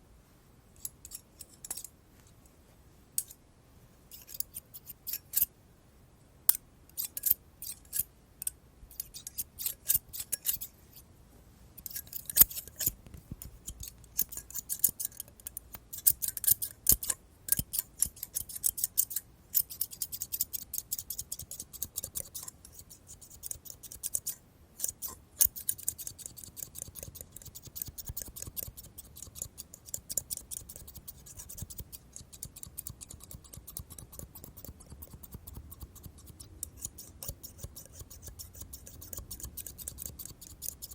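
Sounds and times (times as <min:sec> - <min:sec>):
scissors snipping: 0:11.8 - 0:22.8, 0:23.4 - 0:40.9.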